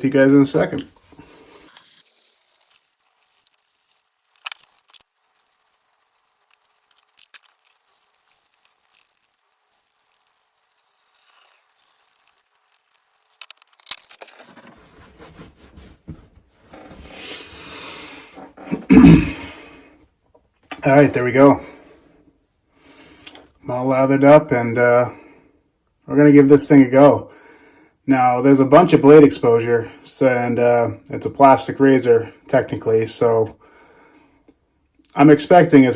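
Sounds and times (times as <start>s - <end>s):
shaving brush swishing lather: 1.1s - 12.4s
shaving gear clicks and scrapes: 1.5s - 14.5s.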